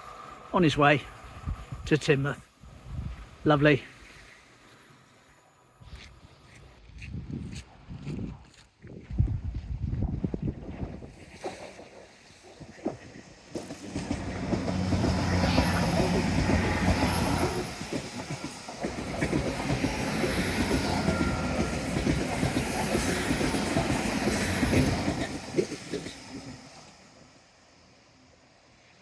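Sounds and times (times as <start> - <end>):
wheels whining on rails: 0.0 - 1.9, 11.0 - 28.9
train rumbling past: 0.0 - 6.6, 10.7 - 28.8.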